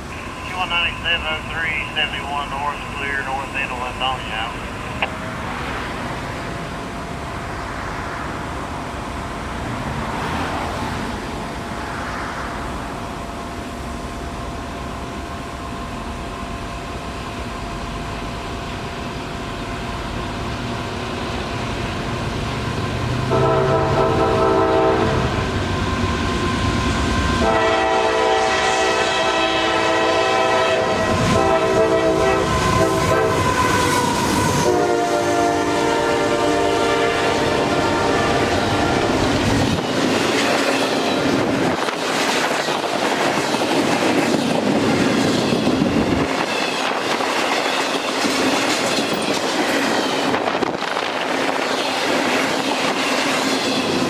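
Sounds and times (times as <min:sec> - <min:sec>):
train rumble: 0:00.0 - 0:54.0
locomotive air horn: 0:23.3 - 0:25.4, 0:27.4 - 0:39.1.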